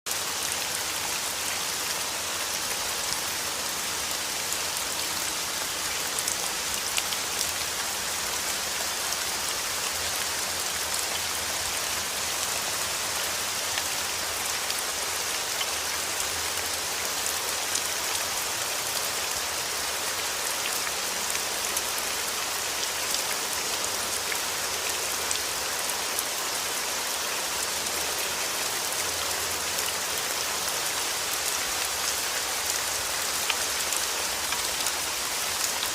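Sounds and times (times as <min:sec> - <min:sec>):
steady rain falling: 0:00.1 - 0:35.9.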